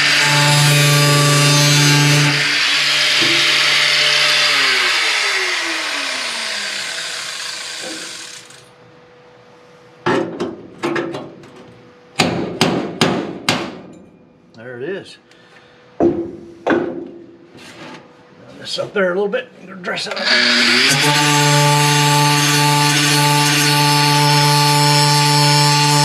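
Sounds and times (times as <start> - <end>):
power tool cutting metal: 0.0 - 8.7, 20.1 - 26.0.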